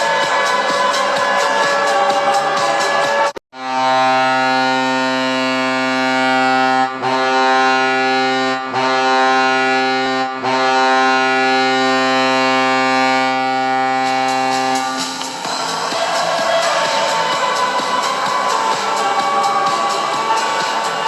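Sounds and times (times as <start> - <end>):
deep arena goal horn: 0.0 - 21.0.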